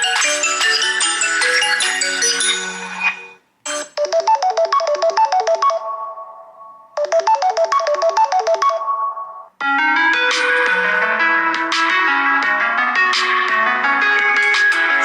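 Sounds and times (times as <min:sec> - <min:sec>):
phone ringtones: 0:03.7 - 0:06.1, 0:07.0 - 0:09.0.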